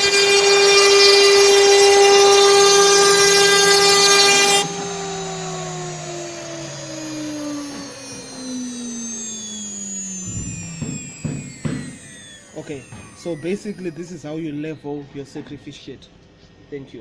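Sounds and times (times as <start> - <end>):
router spindle whining: 0.0 - 15.5
low knocks: 10.3 - 12.2.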